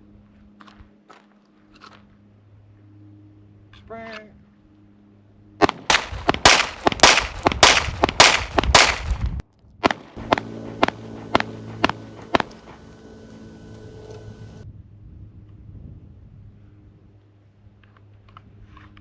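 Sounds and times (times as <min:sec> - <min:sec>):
pistol shots: 0:05.6 - 0:09.4, 0:10.2 - 0:13.0.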